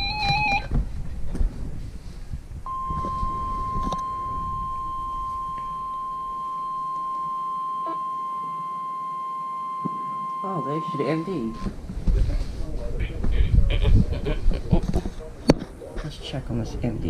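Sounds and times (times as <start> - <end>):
low rumbling receiver noise: 2.6 - 15.8
steady alarm tone: 2.7 - 11.8.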